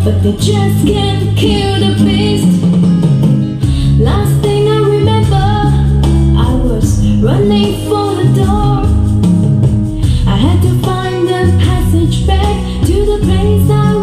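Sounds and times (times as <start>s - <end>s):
woman singing: 0.0s - 3.0s, 3.6s - 9.2s, 10.0s - 14.0s
guitar: 0.0s - 14.0s.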